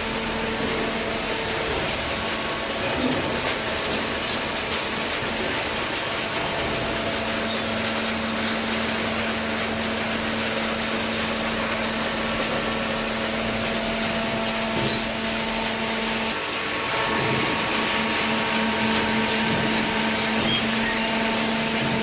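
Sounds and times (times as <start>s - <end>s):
machine humming: 0.0s - 22.0s.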